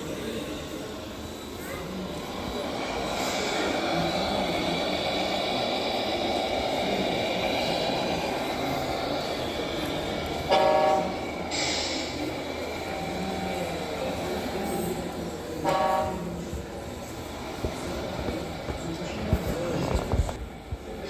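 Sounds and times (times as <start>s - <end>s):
horn blast: 10.4s - 11.4s, 15.6s - 16.4s.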